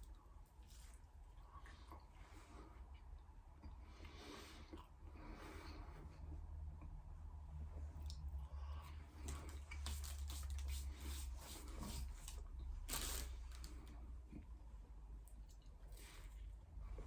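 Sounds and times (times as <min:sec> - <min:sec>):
low steady hum: 0:00.0 - 0:17.0
person chewing food: 0:02.9 - 0:05.0.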